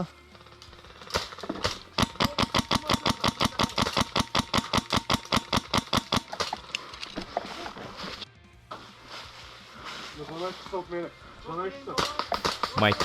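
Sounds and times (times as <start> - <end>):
airsoft gun full-auto firing: 1.2 - 6.5.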